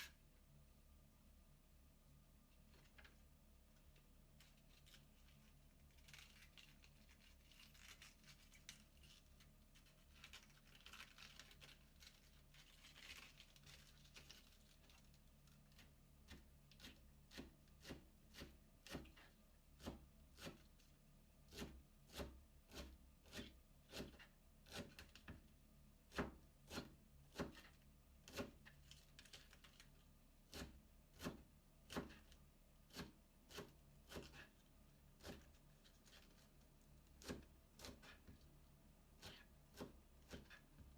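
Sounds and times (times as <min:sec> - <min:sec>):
knife chopping cabbage on board: 0:15.8 - 0:20.8, 0:21.5 - 0:29.6, 0:30.4 - 0:34.6, 0:35.2 - 0:36.4, 0:37.0 - 0:38.5, 0:39.2 - 0:40.9.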